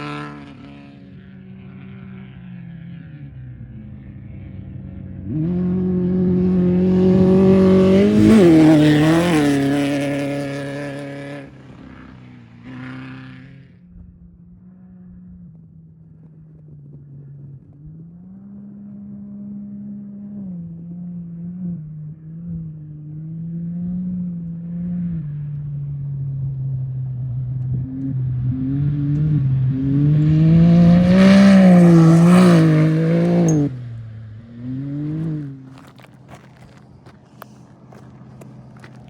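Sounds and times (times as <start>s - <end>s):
off-road vehicle engine revving: 0.0s - 39.0s.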